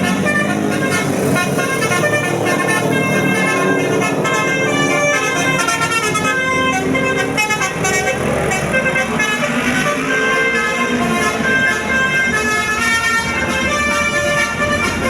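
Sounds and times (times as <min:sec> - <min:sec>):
bus musical horn melody: 0:00.0 - 0:15.0.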